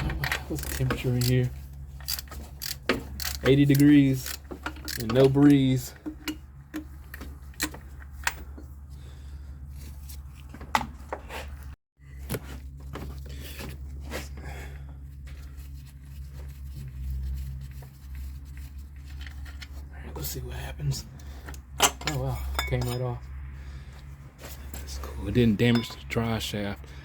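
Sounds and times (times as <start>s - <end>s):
hand tools clicking and knocking: 0.0s - 8.7s, 25.6s - 26.2s.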